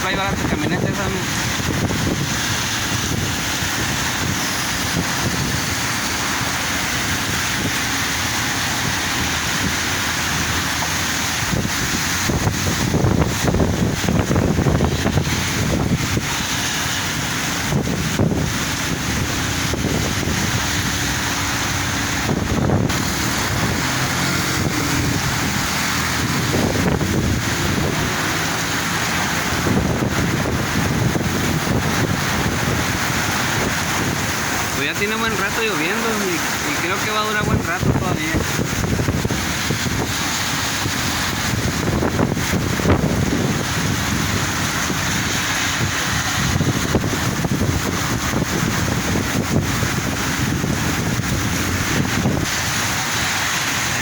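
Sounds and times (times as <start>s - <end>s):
low rumble: 0.0s - 34.8s
heavy rain pouring: 0.0s - 54.0s.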